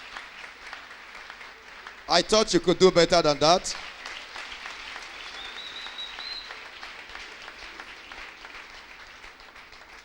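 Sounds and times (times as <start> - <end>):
crowd applauding: 0.0 - 10.0
thin high whistle tone: 5.4 - 6.5.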